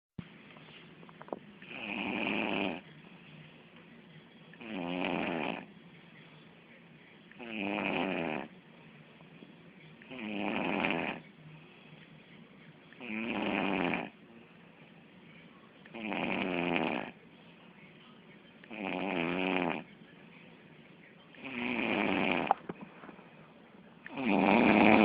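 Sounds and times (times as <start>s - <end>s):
person snoring: 1.6s - 2.8s, 4.6s - 5.7s, 7.4s - 8.5s, 10.1s - 11.2s, 13.0s - 14.2s, 15.9s - 17.2s, 18.7s - 19.9s, 21.4s - 22.6s, 24.1s - 25.0s.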